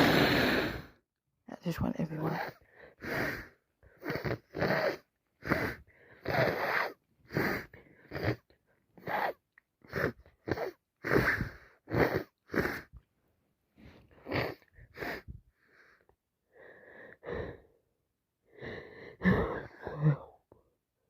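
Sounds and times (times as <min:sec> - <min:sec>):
person sniffling through congested nose: 0:00.0 - 0:01.0, 0:02.3 - 0:08.4, 0:09.0 - 0:12.9, 0:13.8 - 0:16.0.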